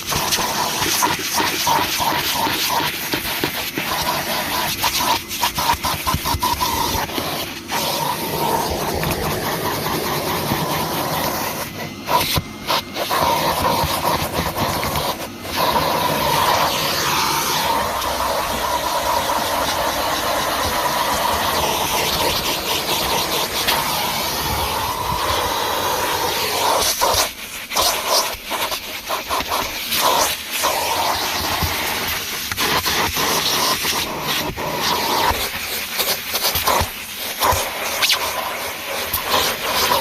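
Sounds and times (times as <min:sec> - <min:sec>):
vacuum cleaner running: 0:00.0 - 0:40.0.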